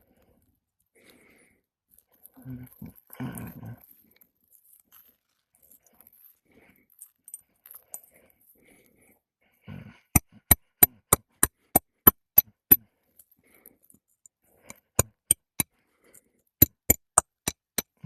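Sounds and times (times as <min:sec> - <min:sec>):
hammer striking roofing nails: 0:16.6 - 0:17.9.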